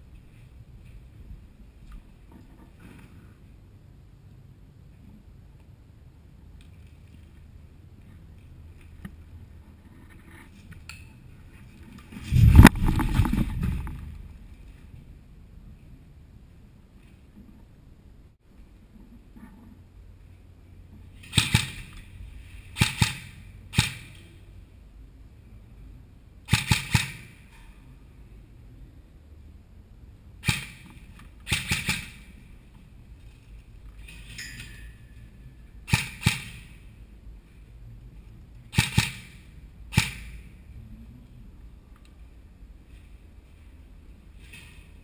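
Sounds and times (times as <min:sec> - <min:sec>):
airsoft rifle shots: 0:21.2 - 0:22.0, 0:22.8 - 0:24.2, 0:26.5 - 0:27.5, 0:30.4 - 0:32.4, 0:35.9 - 0:36.8, 0:38.7 - 0:40.5.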